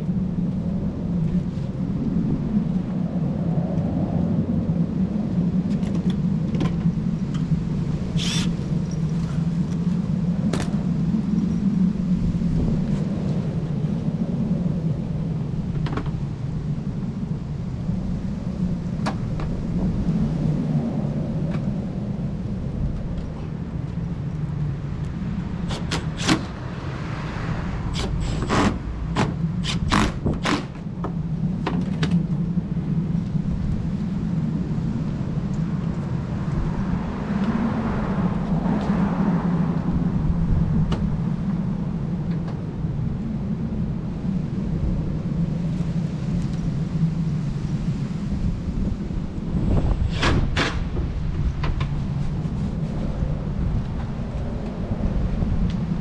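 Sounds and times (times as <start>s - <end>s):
steady low rumble: 0.0s - 56.0s
clicks and knocks of hand work: 28.0s - 32.2s.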